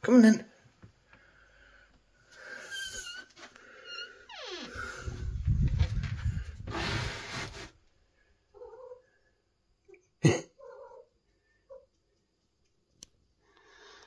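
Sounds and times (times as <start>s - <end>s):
small pet scuffling and rustling: 4.9s - 7.8s.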